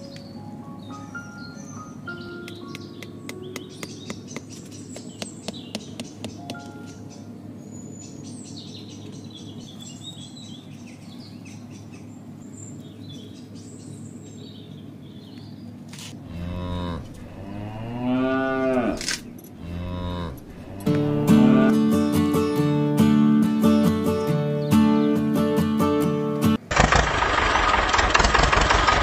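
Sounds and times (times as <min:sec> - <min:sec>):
steady low hum: 0:00.0 - 0:24.1
faint birds chirping: 0:00.0 - 0:26.5
cow mooing: 0:16.2 - 0:19.0, 0:19.6 - 0:21.9.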